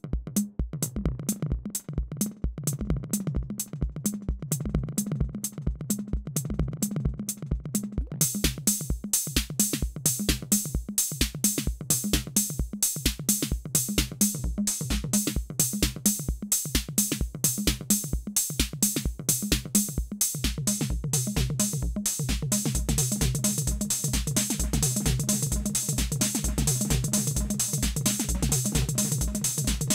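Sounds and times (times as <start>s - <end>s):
fast hi-hats: 0.0s - 29.9s
kick drum: 0.0s - 29.9s.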